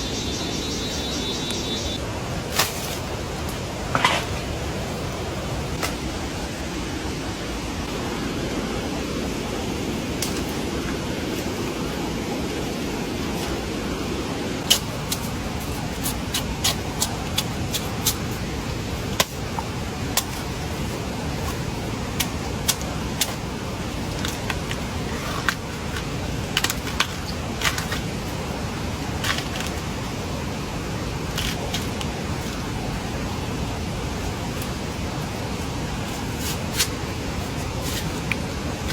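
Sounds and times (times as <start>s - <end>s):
steady rushing noise: 0.0s - 38.9s.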